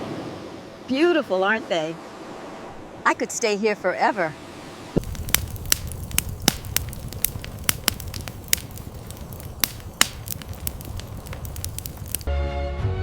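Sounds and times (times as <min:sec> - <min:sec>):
fire crackling and popping: 0:05.0 - 0:12.3
steady low rumble: 0:05.0 - 0:12.3.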